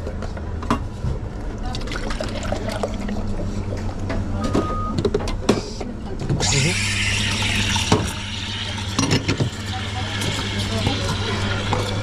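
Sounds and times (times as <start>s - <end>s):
short beep: 4.4s - 5.0s.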